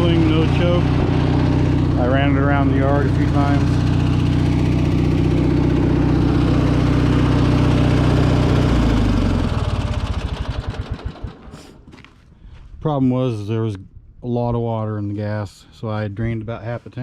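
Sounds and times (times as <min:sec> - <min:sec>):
lawn tractor engine idling: 0:00.0 - 0:11.9.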